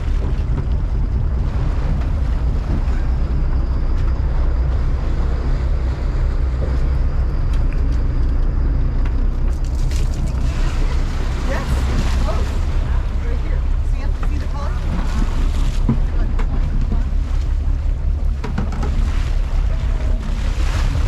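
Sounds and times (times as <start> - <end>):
boat engine rumbling: 0.0 - 21.0
wind buffeting microphone: 0.0 - 21.0.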